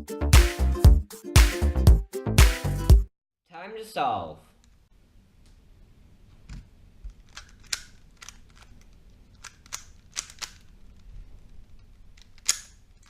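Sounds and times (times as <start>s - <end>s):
puzzle cube plastic clicks: 7.1s - 13.0s.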